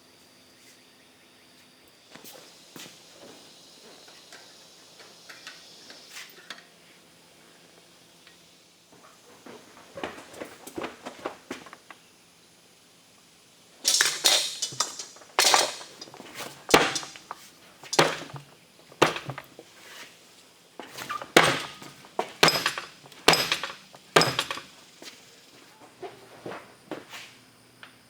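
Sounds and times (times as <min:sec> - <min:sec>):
hammer striking metal on anvil: 0:22.4 - 0:24.6.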